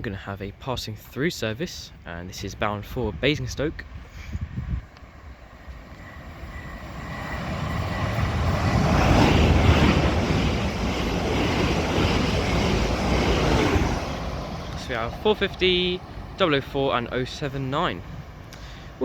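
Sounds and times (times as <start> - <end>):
train passing at speed: 1.9 - 19.0
wheels rushing on rail: 3.9 - 19.0.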